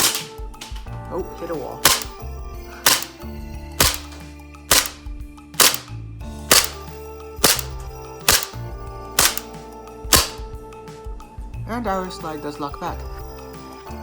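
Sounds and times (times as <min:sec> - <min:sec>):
airsoft pistol shots: 0:00.0 - 0:00.3, 0:01.8 - 0:02.2, 0:02.8 - 0:03.2, 0:03.8 - 0:05.0, 0:05.6 - 0:05.9, 0:06.5 - 0:08.6, 0:09.2 - 0:09.5, 0:10.1 - 0:10.4
pistol slide cycling: 0:00.0 - 0:00.3, 0:01.8 - 0:02.2, 0:02.8 - 0:03.2, 0:03.8 - 0:05.0, 0:05.6 - 0:05.9, 0:06.5 - 0:08.6, 0:09.2 - 0:09.5, 0:10.1 - 0:10.4.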